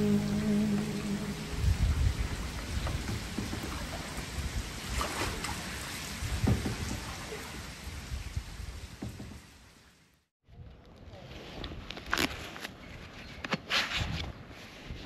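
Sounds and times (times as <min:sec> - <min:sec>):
wind on microphone: 0:00.0 - 0:05.0.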